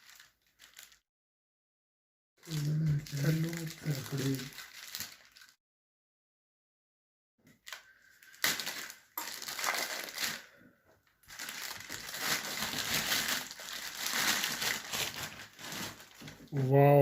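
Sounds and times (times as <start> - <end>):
plastic packaging crinkling: 0.0 - 1.0, 2.4 - 5.6, 7.6 - 10.6, 11.2 - 16.5.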